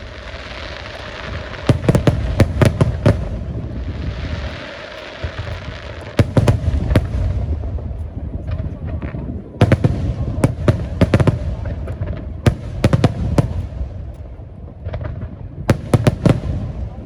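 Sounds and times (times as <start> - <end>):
fireworks bangs: 0.0 - 17.0
low rumble and hiss: 0.0 - 17.0.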